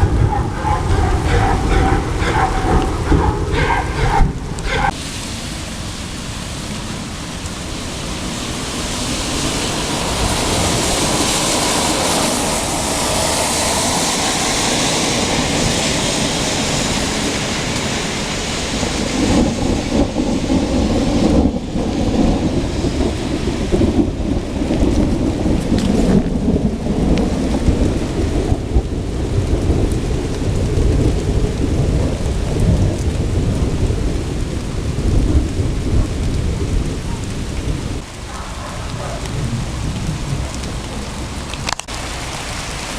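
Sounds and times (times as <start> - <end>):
heavy rain hissing: 0.0 - 42.9
thunder rumbling: 0.0 - 42.9.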